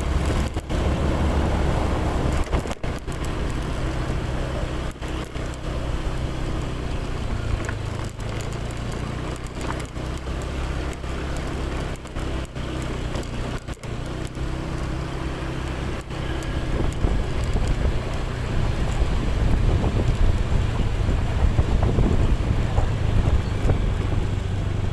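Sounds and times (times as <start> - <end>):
engine running with low hum: 0.0 - 24.9
wind noise on microphone: 15.8 - 24.9.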